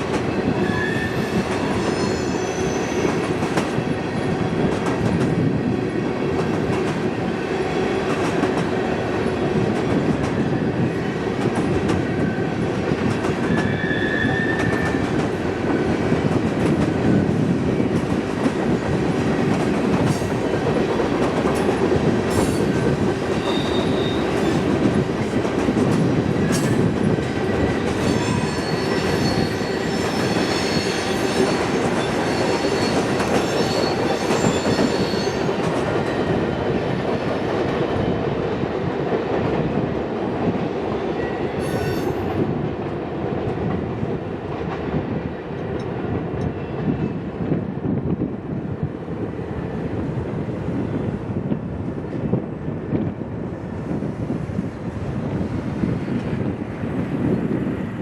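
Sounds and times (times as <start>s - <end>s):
train wheels rumbling on rail: 0.0s - 58.0s
high wheel squeal: 0.6s - 3.2s, 13.6s - 15.0s, 28.0s - 35.5s.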